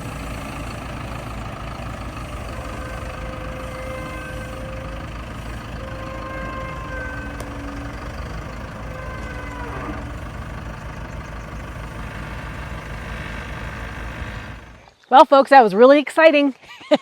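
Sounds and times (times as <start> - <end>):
held higher tones: 0.0 - 14.8
falling whine: 0.0 - 14.9
heavy engine rumbling: 0.0 - 15.0.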